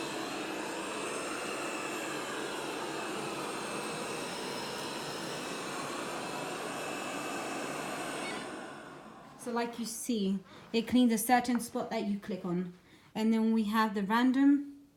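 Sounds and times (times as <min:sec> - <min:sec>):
robot vacuum whirring: 0:00.0 - 0:09.5.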